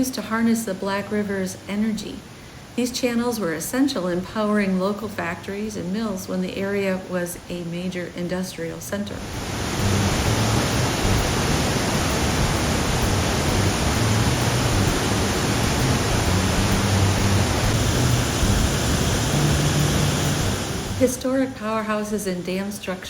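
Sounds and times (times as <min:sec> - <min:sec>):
waterfall rushing: 0:09.2 - 0:21.2.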